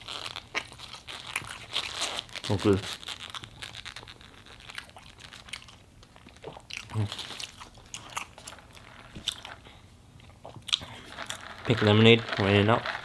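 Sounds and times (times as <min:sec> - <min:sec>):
crunchy chewing: 0:00.0 - 0:09.6.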